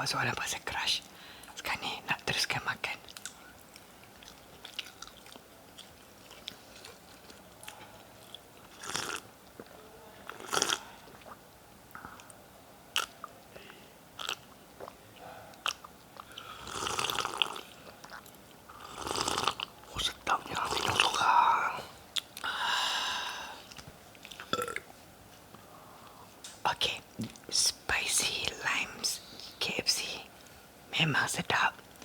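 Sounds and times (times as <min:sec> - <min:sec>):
fried chicken crunching while chewed: 0:03.2 - 0:09.7.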